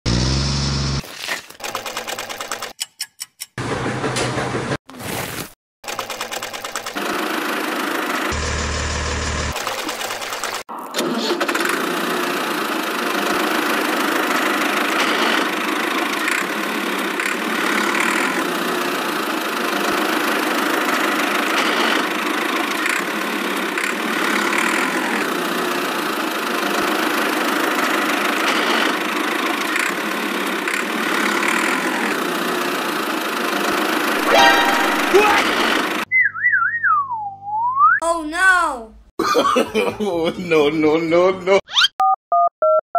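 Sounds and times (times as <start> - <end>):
small engine running: 0.0 - 1.0, 5.8 - 36.1.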